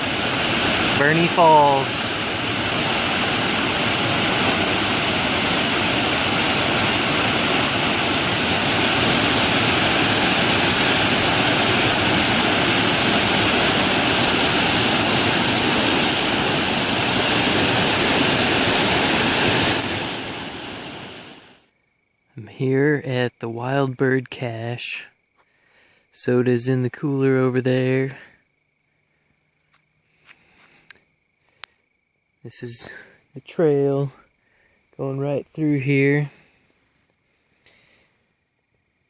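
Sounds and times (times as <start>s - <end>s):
large waterfall rushing: 0.0s - 21.6s.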